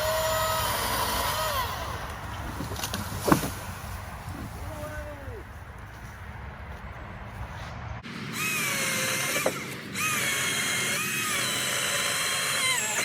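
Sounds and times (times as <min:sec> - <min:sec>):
chainsaw electric motor whining: 0:00.0 - 0:02.9, 0:08.2 - 0:13.0.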